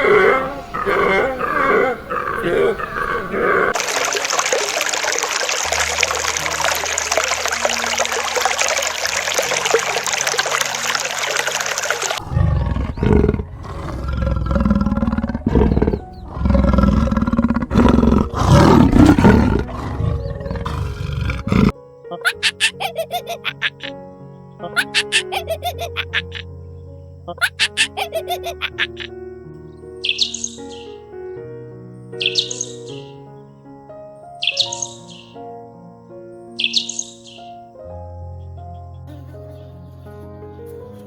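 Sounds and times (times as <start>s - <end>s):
large animal roaring: 0.0s - 3.8s, 12.2s - 21.8s
low background music: 5.3s - 41.0s.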